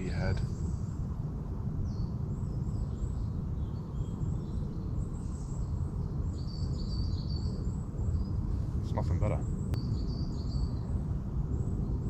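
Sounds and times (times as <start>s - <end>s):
birds chirping: 0.0s - 0.6s, 8.1s - 10.7s
steady low rumbling noise: 0.0s - 2.8s, 3.4s - 12.0s.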